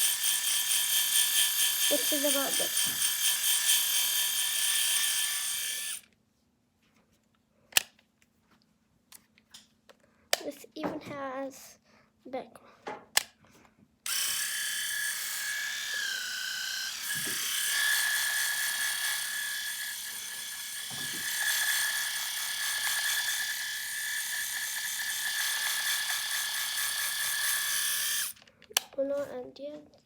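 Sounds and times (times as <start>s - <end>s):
electric razor motor whining: 0.0s - 6.0s, 14.1s - 28.4s.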